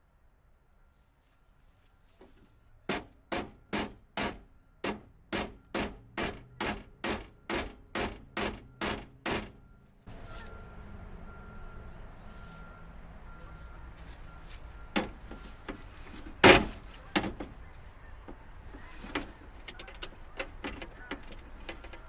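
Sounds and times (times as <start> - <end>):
hammer striking car parts: 2.9 - 9.8, 15.0 - 17.6, 18.3 - 22.0.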